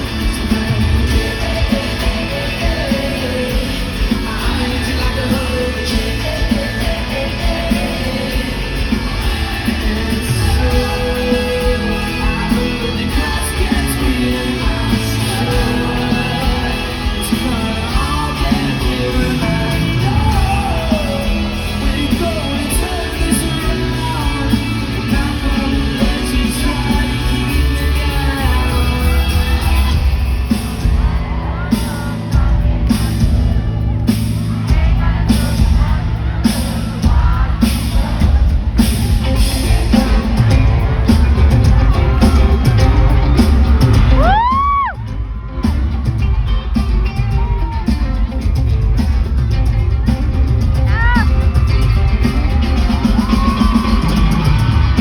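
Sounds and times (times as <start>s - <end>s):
loud music with heavy bass: 0.0s - 55.0s
people singing: 0.0s - 55.0s
people shouting: 28.3s - 38.3s, 39.0s - 48.4s, 50.8s - 55.0s.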